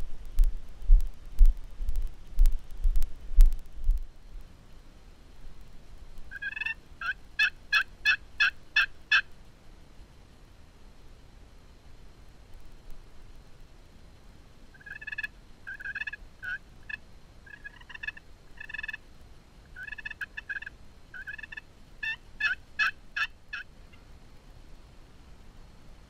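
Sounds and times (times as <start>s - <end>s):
turkey yelping: 6.3s - 9.3s, 14.8s - 19.0s, 19.7s - 24.0s.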